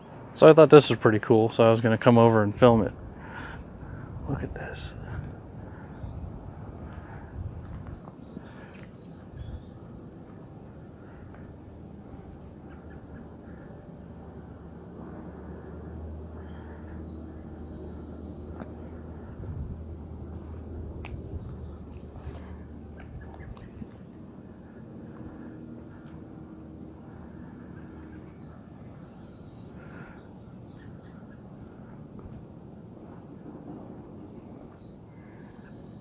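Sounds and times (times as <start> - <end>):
insects buzzing: 0.0 - 36.0
low rumble: 2.9 - 8.3, 14.1 - 28.2
bird chirps: 7.6 - 9.8, 16.4 - 18.6, 21.0 - 24.3, 34.7 - 36.0.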